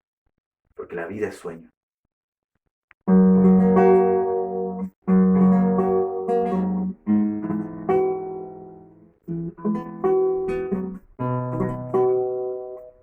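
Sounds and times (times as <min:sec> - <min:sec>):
acoustic guitar strumming chords: 0:03.1 - 0:13.0.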